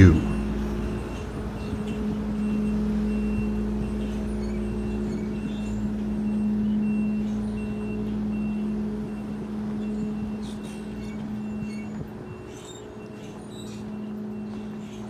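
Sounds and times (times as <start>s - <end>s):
large engine humming: 0.0s - 11.6s.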